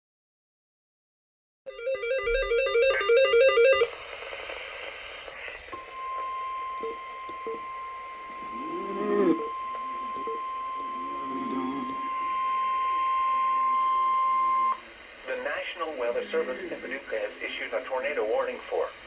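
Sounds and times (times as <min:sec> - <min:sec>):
repeating electronic tones: 0:05.9 - 0:14.8.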